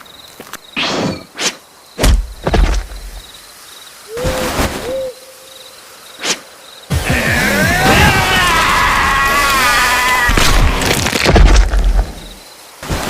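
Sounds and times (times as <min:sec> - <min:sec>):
crickets chirping: 0:00.0 - 0:07.7, 0:10.8 - 0:13.0
owl hooting: 0:04.1 - 0:05.6.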